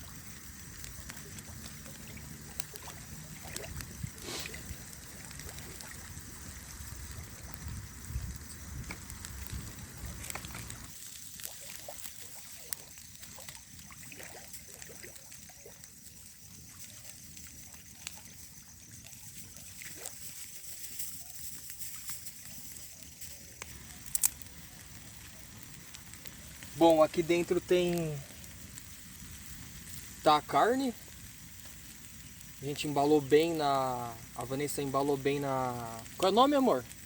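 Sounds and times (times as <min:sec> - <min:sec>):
campfire crackling and popping: 0:00.0 - 0:37.0.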